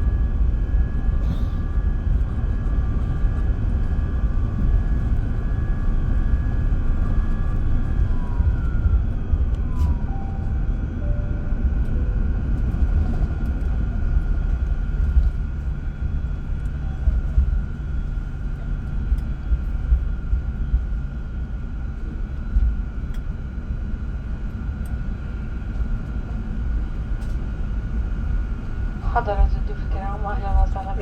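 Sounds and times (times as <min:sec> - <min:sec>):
low rumble of airliner engines: 0:00.0 - 0:31.0
thin steady whine: 0:28.2 - 0:31.0.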